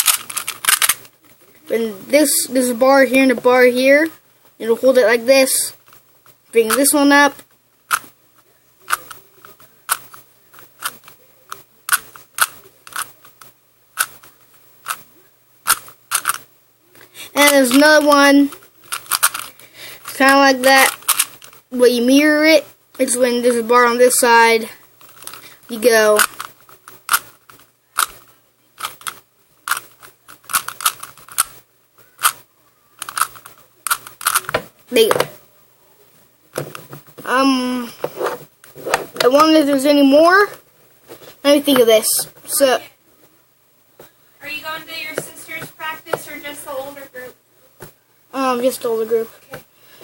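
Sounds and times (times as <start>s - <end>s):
puzzle cube turning clicks: 0.0s - 1.1s, 8.9s - 15.0s, 15.6s - 16.5s, 17.5s - 21.6s, 25.0s - 28.2s, 28.8s - 31.6s, 32.2s - 32.4s, 33.0s - 35.3s.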